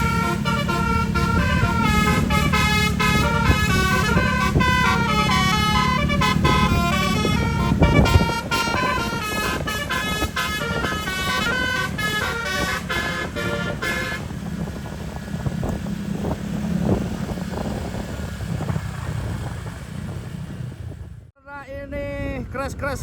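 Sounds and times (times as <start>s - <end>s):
bus horn playing fast melody: 0.0s - 14.7s
engine and road noise: 0.0s - 23.0s.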